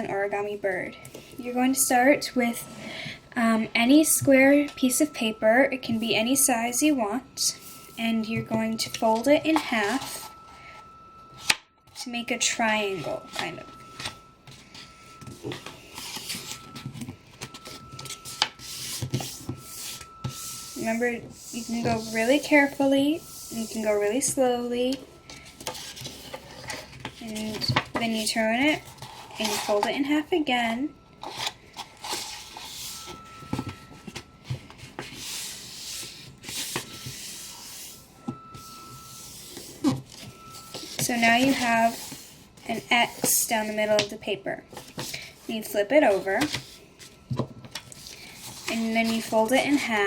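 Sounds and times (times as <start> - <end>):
paper rustling and scraping: 12.9 - 24.2, 25.3 - 30.0, 31.2 - 38.0, 38.6 - 43.4, 44.7 - 45.5, 46.1 - 49.9.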